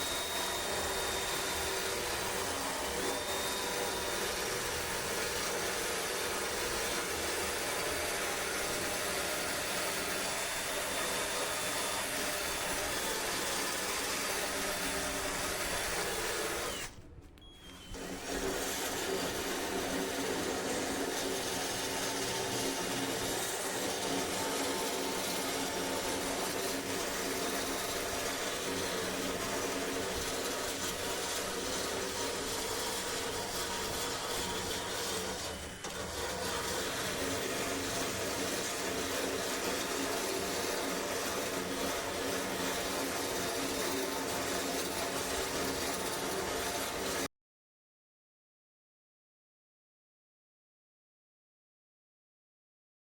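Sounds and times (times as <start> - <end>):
machine motor humming: 10.4 - 43.0.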